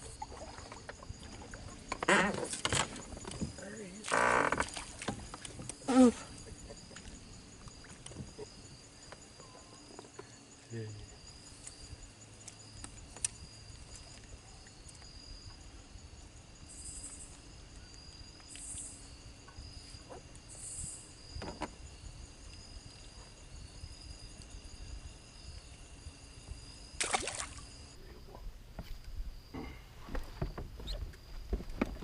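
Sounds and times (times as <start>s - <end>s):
insects calling in chorus: 0.0s - 28.4s, 29.4s - 32.0s
clicks and knocks of tackle: 28.8s - 32.0s.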